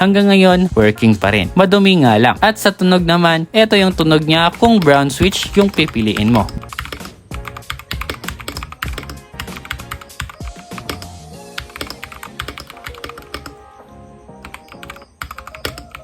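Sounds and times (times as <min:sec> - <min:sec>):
background music: 0:00.0 - 0:16.0
mechanical keyboard typing: 0:04.5 - 0:13.6, 0:14.4 - 0:16.0.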